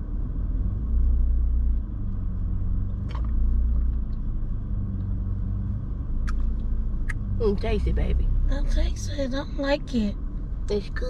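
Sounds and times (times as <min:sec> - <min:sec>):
car cabin rumble: 0:00.0 - 0:11.0.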